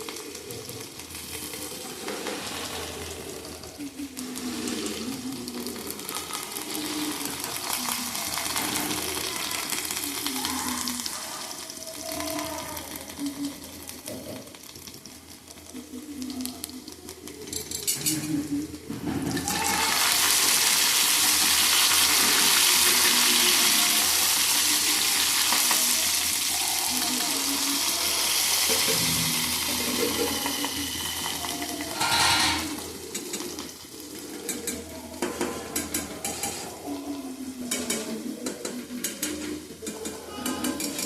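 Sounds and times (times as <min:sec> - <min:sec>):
food sizzling in oil: 0:00.0 - 0:38.0
utensils scraping pan: 0:29.9 - 0:33.5.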